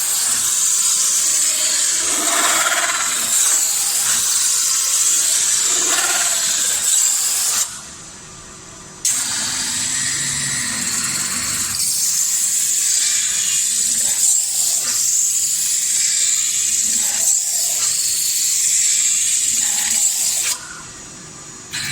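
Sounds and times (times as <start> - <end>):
metal-spinning lathe running: 0.1 - 7.5.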